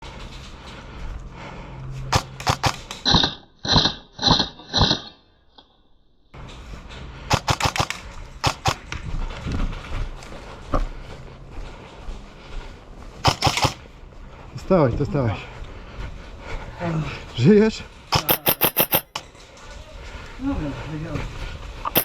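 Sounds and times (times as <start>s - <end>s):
airsoft gun shots: 2.1s - 4.4s, 7.3s - 8.8s, 13.2s - 13.8s, 18.2s - 19.2s.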